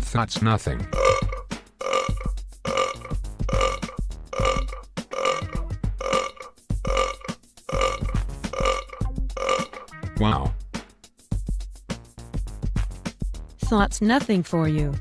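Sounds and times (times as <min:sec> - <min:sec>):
loud belches: 0:00.9 - 0:09.9.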